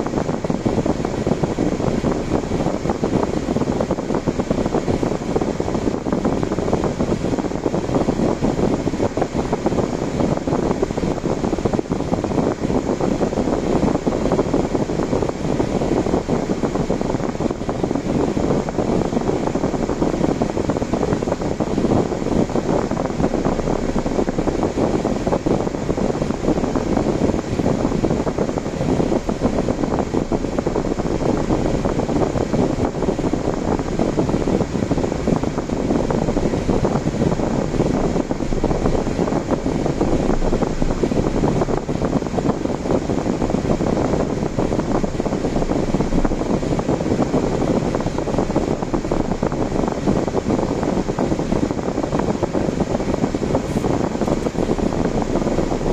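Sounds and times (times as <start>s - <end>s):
wind noise: 0.0s - 55.9s
car road noise: 14.9s - 49.3s, 53.0s - 55.9s.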